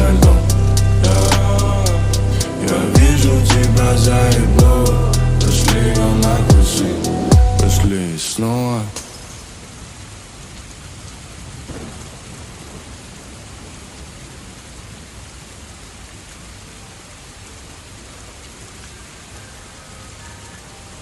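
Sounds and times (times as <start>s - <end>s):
steady rain falling: 0.0s - 21.0s
low rumble of thunder: 11.5s - 14.6s.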